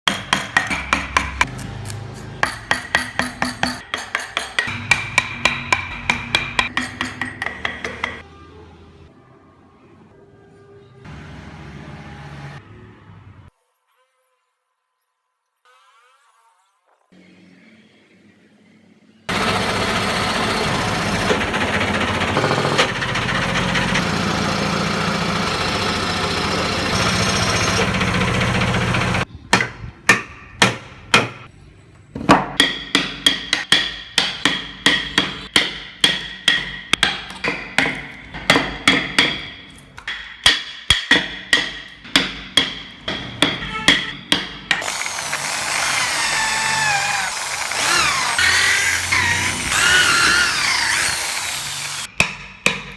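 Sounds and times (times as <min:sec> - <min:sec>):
power tool running: 0:19.3 - 0:29.3, 0:44.8 - 0:52.1.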